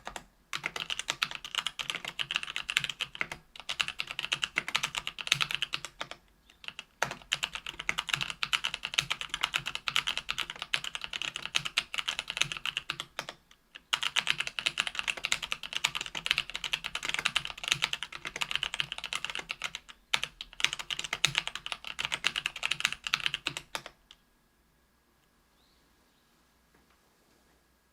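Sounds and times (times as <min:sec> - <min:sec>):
mechanical keyboard typing: 0:00.0 - 0:24.1.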